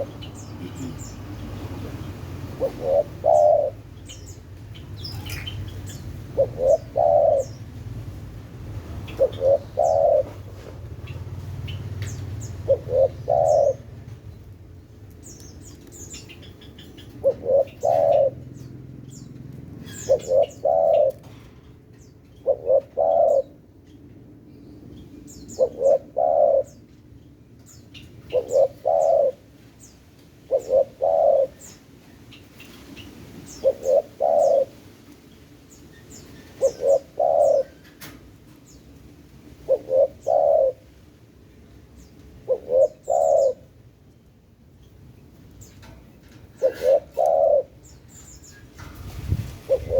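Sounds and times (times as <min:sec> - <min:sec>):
dove cooing: 0:00.0 - 0:04.4, 0:05.0 - 0:07.9, 0:08.9 - 0:14.2, 0:15.8 - 0:18.9, 0:19.8 - 0:21.4, 0:22.4 - 0:23.8, 0:25.3 - 0:26.8, 0:28.2 - 0:29.6, 0:30.5 - 0:31.8, 0:33.4 - 0:34.9, 0:35.7 - 0:38.1, 0:39.6 - 0:41.0, 0:42.4 - 0:43.8, 0:45.7 - 0:49.9
small birds chirping: 0:00.0 - 0:08.0, 0:08.9 - 0:39.0, 0:41.8 - 0:49.9.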